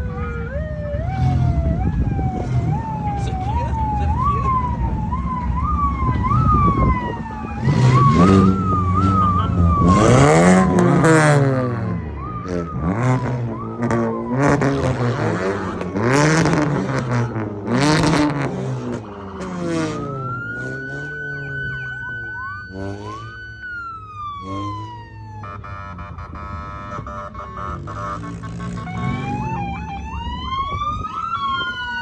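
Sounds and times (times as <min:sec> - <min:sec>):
emergency vehicle sirens: 0:00.0 - 0:32.0
steady horn-like tones: 0:25.4 - 0:29.5.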